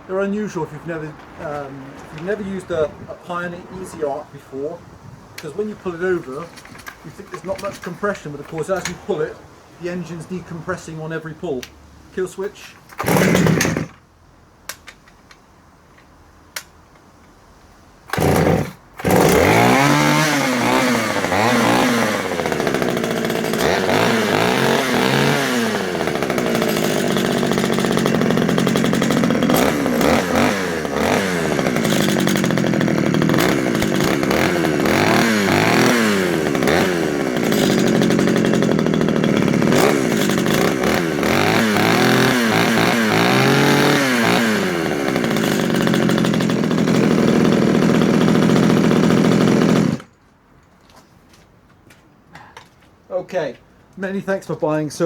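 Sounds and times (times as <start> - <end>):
chainsaw engine revving: 5.4 - 10.3, 12.9 - 14.0, 18.1 - 50.1.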